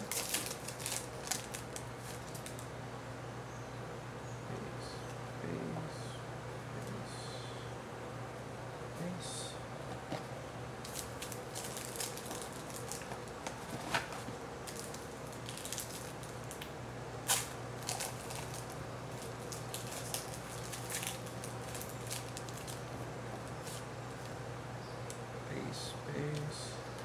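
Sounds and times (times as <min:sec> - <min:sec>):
cards clicking and rustling: 0:00.0 - 0:02.6
low electrical hum: 0:00.0 - 0:27.0.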